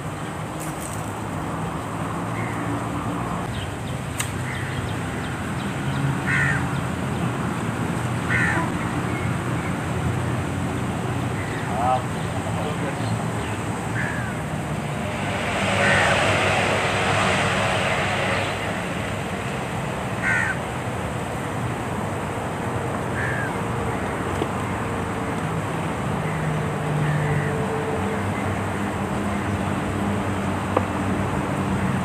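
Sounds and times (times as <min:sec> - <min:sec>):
outdoor background noise: 0:00.0 - 0:32.0
low hum: 0:13.5 - 0:21.8.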